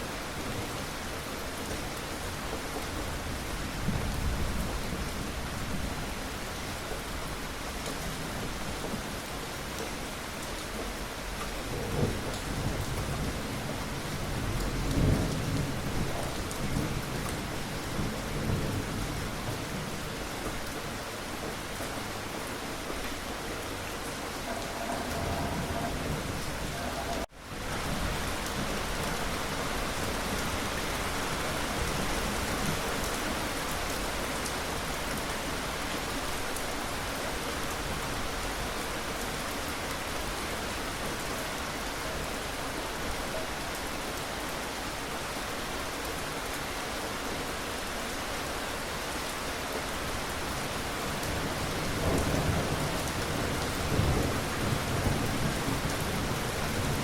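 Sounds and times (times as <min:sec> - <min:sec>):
steady rain: 0:00.0 - 0:57.0
thunder rumbling: 0:23.6 - 0:29.3.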